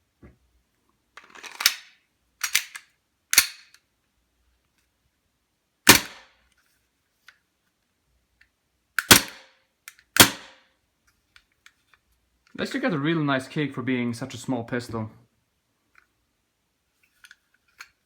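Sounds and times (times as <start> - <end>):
airsoft pistol shots: 5.9 - 6.3, 9.0 - 9.5, 10.2 - 10.6.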